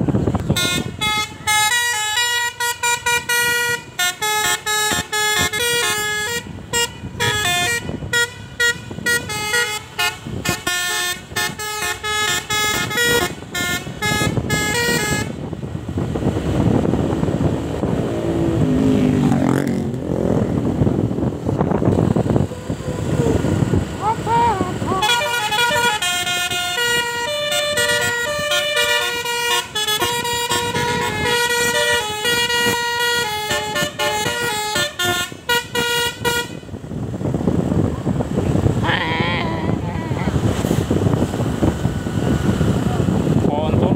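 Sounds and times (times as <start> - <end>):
engine and road noise: 0.0 - 43.9
musical bus air horn tune: 0.4 - 15.4, 24.8 - 36.8.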